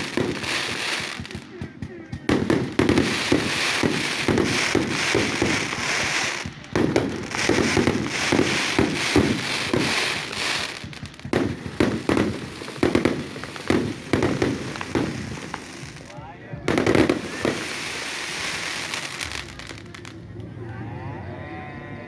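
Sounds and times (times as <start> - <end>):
fireworks bangs and crackles: 0.0 - 20.4.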